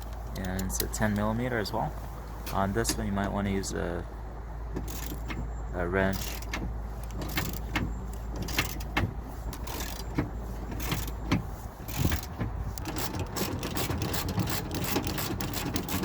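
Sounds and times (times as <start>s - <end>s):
wrench clicking on bolt: 4.8s - 5.4s, 6.1s - 11.3s, 11.9s - 16.0s.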